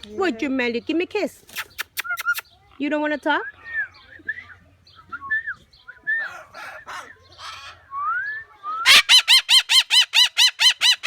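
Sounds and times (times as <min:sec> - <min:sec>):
parrots whistling and squawking: 0:06.0 - 0:08.2, 0:08.8 - 0:11.0.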